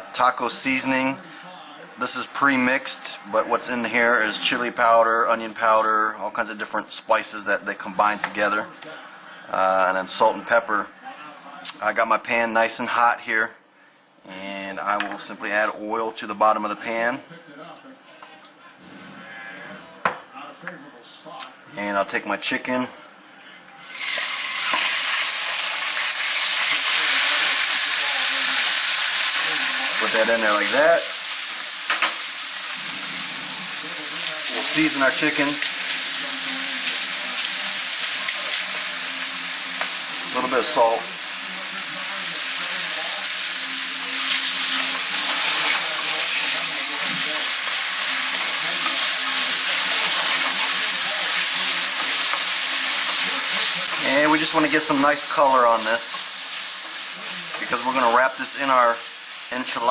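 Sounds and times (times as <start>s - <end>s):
chicken sizzling in frying pan: 23.8s - 59.9s.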